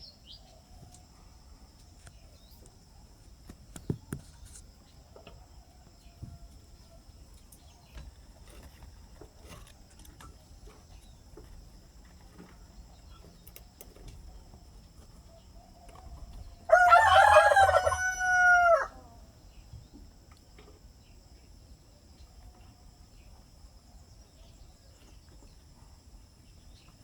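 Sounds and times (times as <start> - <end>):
rooster crowing: 16.7 - 19.2.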